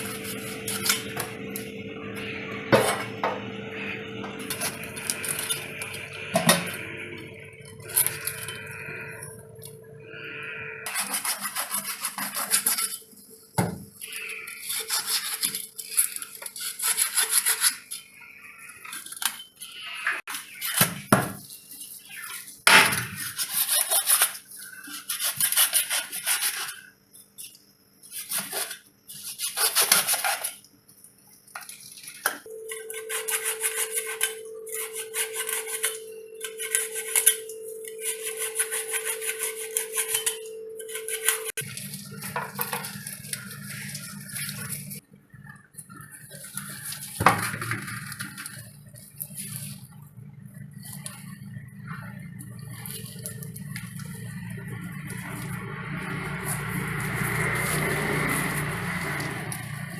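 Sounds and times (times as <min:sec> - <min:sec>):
knife scraping fish: 0:00.0 - 0:01.6, 0:04.4 - 0:06.5, 0:07.2 - 0:09.4, 0:10.8 - 0:13.2, 0:14.0 - 0:30.6, 0:31.5 - 0:45.0, 0:46.0 - 0:49.9
steady hum: 0:00.0 - 0:14.9, 0:32.4 - 0:59.9.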